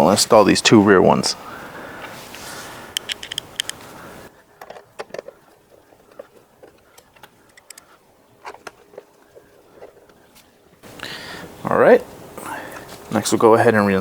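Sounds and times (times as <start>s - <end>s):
steady hiss: 0.0s - 4.4s, 10.8s - 14.0s
plastic parts handled: 3.0s - 3.8s, 4.5s - 10.5s
small screws being driven: 3.0s - 3.8s.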